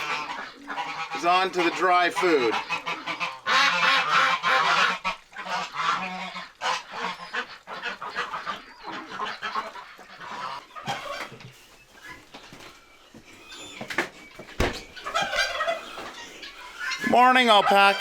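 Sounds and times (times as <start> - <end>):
farm fowl honking and calling: 0.0 - 18.0.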